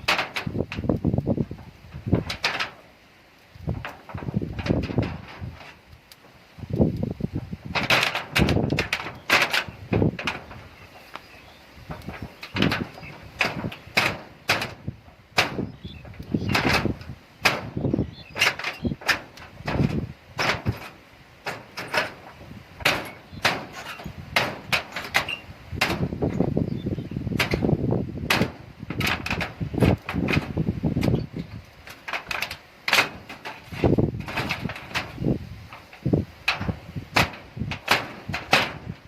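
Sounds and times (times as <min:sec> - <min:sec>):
irregular knocks and bangs: 0:11.9 - 0:26.5, 0:27.3 - 0:31.2, 0:36.5 - 0:39.0.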